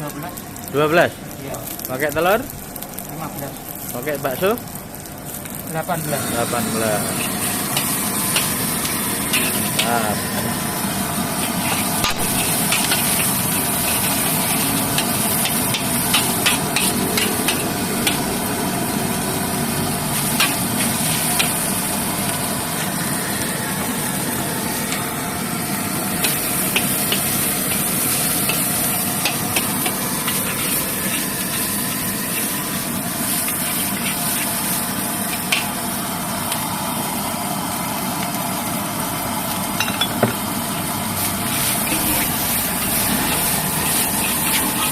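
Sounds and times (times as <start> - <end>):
rice sizzling in a wok: 0.0 - 44.9.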